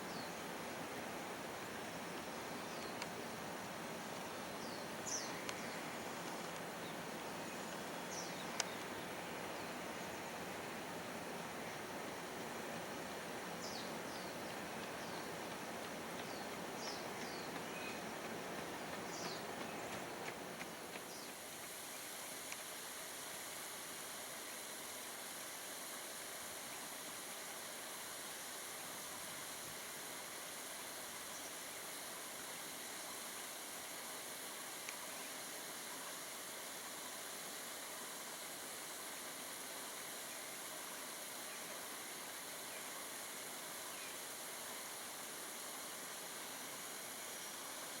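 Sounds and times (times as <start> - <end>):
steady background hiss: 0.0 - 48.0
faint click: 2.7 - 3.2, 5.4 - 6.7, 8.5 - 8.9, 22.5 - 22.7, 34.8 - 35.0.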